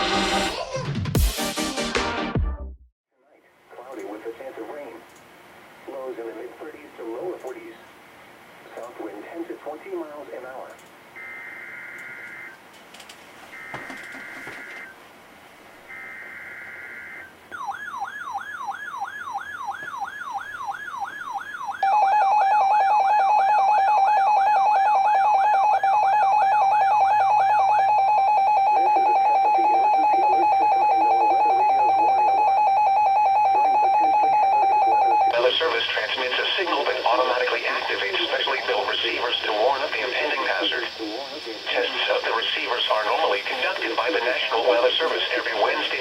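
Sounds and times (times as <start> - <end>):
steady warning alarm tone: 11.2 - 12.6, 13.5 - 15.0, 15.9 - 46.0
wailing alarm: 11.2 - 12.6, 13.5 - 15.0, 15.9 - 35.6.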